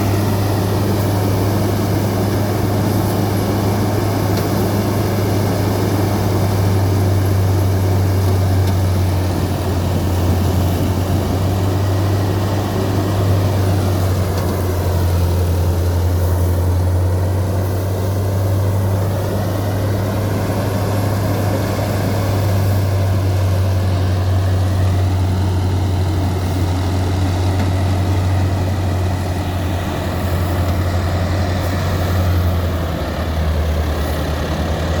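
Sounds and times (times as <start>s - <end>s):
combine harvester running: 0.0s - 35.0s.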